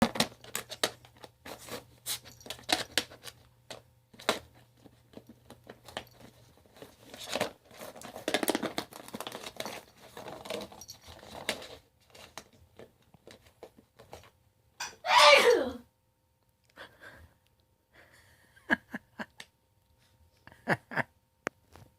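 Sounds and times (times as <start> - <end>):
dog chewing plastic container: 6.6 - 12.5.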